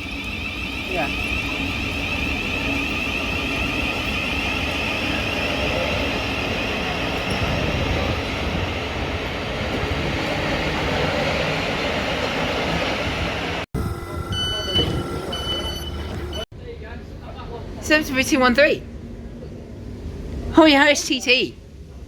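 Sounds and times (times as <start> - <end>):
electric train rumbling and whining: 0.0 - 22.0.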